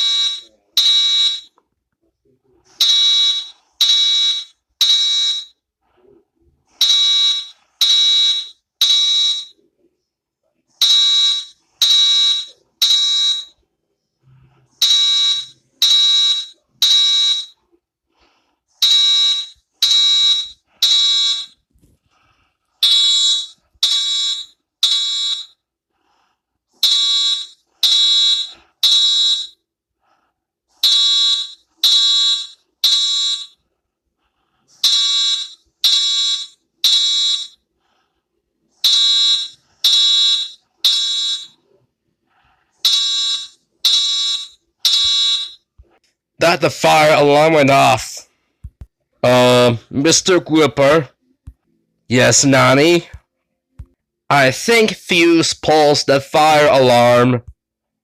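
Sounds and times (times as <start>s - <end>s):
fire alarm beeping: 0.0s - 1.6s, 2.8s - 5.6s, 6.8s - 9.6s, 10.8s - 13.6s, 14.8s - 17.6s, 18.8s - 21.6s, 22.8s - 25.6s, 26.8s - 29.6s, 30.8s - 33.6s, 34.8s - 37.6s, 38.8s - 41.6s, 42.8s - 45.7s.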